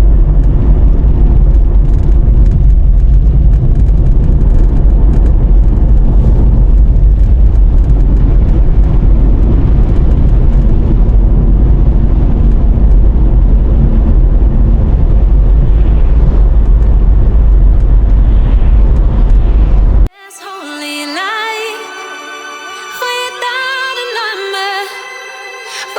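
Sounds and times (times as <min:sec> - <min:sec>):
road and engine noise: 0:00.0 - 0:20.1.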